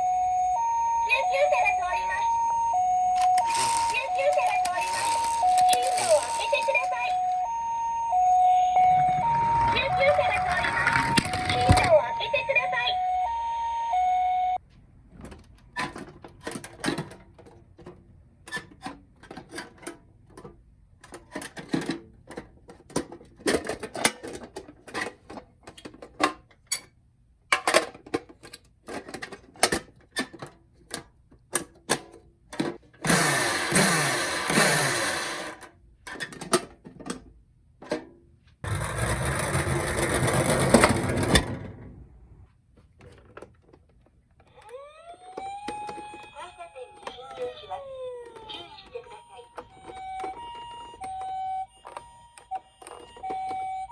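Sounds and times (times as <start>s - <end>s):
toy cars clicking and knocking: 3.1s - 7.5s, 9.8s - 12.6s, 15.2s - 38.0s, 38.6s - 41.6s, 43.0s - 53.9s
toy cars clattering: 3.2s - 7.4s, 9.8s - 12.5s, 15.2s - 37.3s, 38.6s - 41.7s, 45.4s - 53.9s.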